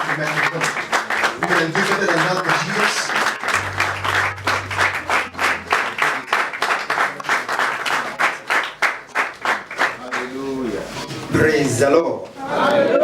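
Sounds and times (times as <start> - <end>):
congregation applauding: 0.0 - 10.6
low held note: 3.5 - 7.1.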